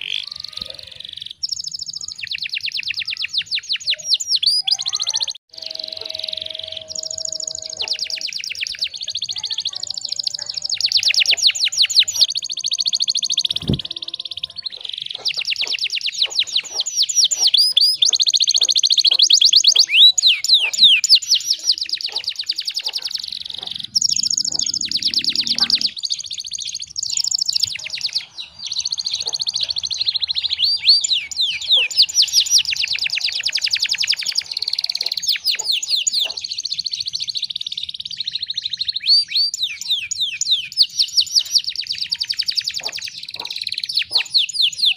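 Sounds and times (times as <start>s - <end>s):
canary singing: 0.0s - 44.9s.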